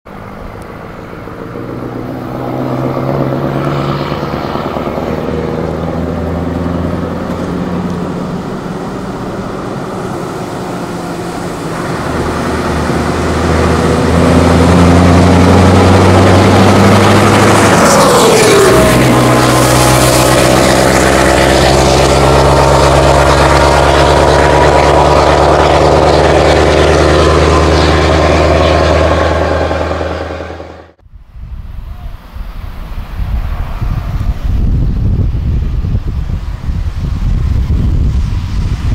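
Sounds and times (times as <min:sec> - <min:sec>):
heavy vehicle engine clattering: 0:00.1 - 0:31.0.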